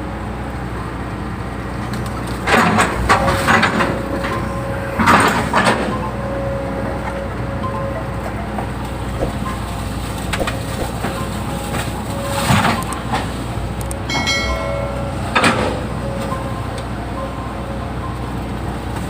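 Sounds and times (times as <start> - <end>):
excavator diesel engine running: 0.0 - 19.0
metallic clanks from bucket: 14.1 - 16.4.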